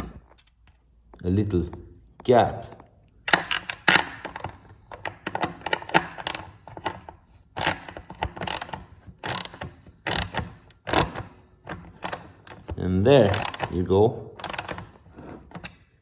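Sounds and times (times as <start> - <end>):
ratchet wrench clicking: 6.0 - 6.6, 7.6 - 11.3, 12.5 - 13.7, 14.4 - 14.8.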